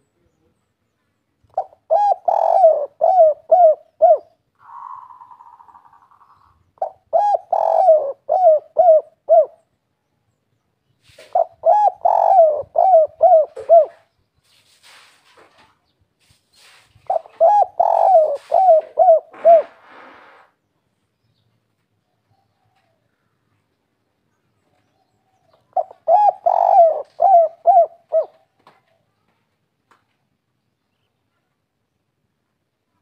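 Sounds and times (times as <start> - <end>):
dove cooing: 1.5 - 9.7, 11.2 - 14.1, 17.0 - 20.4, 25.3 - 28.6.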